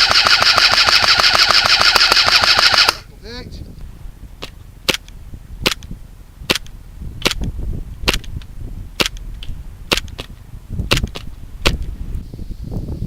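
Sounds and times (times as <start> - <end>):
airsoft gun shots: 0.0 - 3.0, 8.0 - 8.3, 9.0 - 9.2, 9.9 - 10.3.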